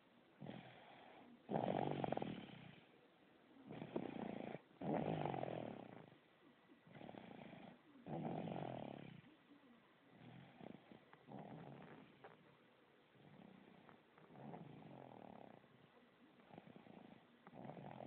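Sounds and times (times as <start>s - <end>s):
loud fluttering snore: 0.4s - 2.9s, 3.7s - 6.1s, 6.9s - 9.3s, 10.1s - 12.4s, 13.2s - 15.7s, 16.4s - 18.0s
soft breath: 0.4s - 3.0s, 6.8s - 18.0s.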